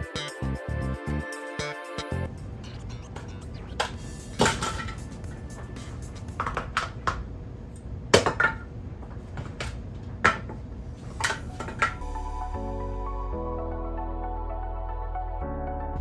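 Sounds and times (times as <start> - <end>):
background music: 0.0 - 7.1, 11.8 - 16.0
small hard objects knocking: 3.1 - 7.3, 8.1 - 12.0.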